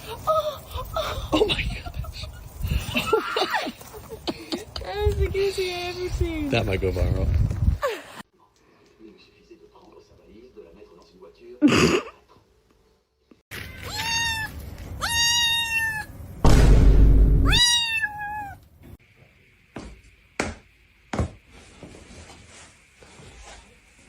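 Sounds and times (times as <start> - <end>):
cat meowing: 13.6 - 16.1, 17.4 - 18.6
sharp knocks: 16.4 - 17.6.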